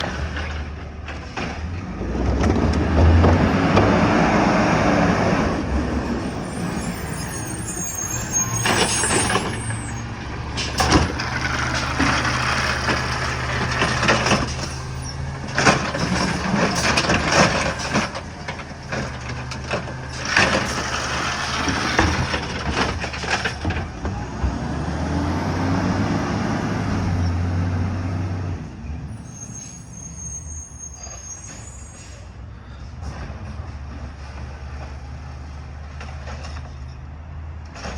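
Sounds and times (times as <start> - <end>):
truck engine droning and revving: 0.0 - 37.9.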